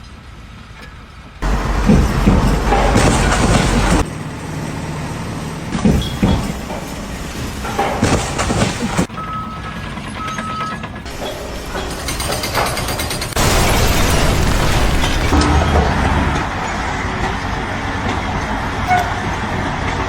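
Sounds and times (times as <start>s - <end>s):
construction machinery noise: 0.0s - 20.0s
knocks: 5.8s - 9.1s.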